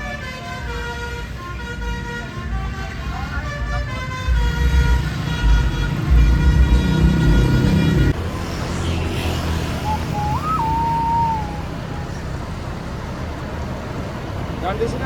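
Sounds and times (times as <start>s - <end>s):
multi-tone air horn chord: 0.0s - 8.2s
bus engine rumble: 0.0s - 15.0s
traffic noise: 0.0s - 15.0s
whistle-like tone: 8.7s - 12.2s.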